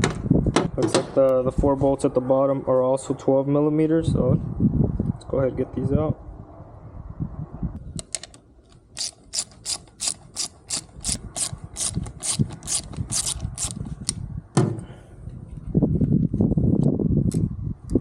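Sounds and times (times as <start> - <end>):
ratchet wrench clicking: 9.0 - 14.2.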